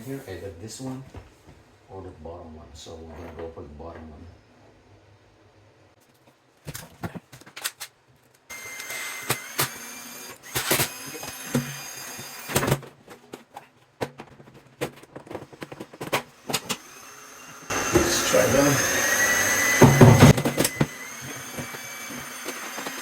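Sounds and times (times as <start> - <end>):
small power tool motor whirring: 8.5 - 12.8, 16.4 - 23.0.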